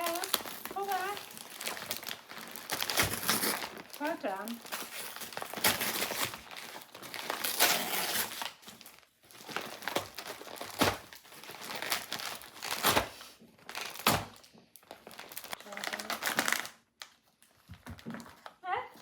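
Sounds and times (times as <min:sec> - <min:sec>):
gift wrapping crinkling and tearing: 0:00.0 - 0:19.0.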